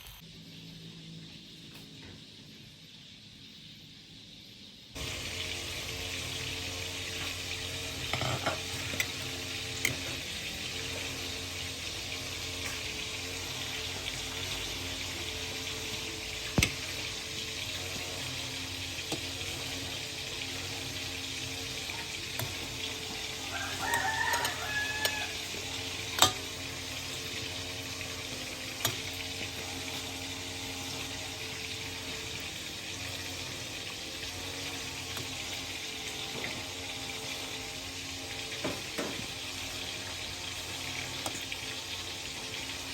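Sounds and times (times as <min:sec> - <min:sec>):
rooster crowing: 0:23.2 - 0:25.8.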